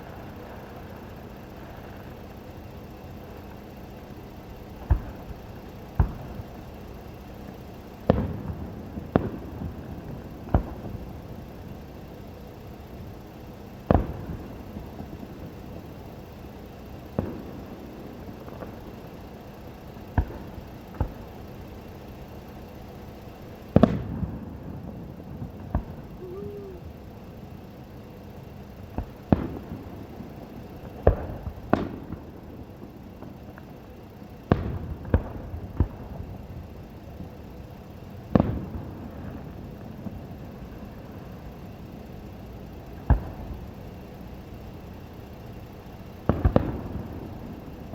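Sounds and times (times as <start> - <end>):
fireworks booming: 4.8 - 11.9, 12.9 - 19.3, 20.1 - 27.2, 28.9 - 32.3, 38.3 - 39.6, 46.1 - 47.9.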